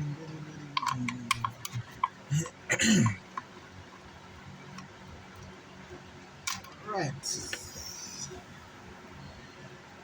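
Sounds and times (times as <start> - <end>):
man murmuring: 0.0 - 3.2, 7.2 - 8.5.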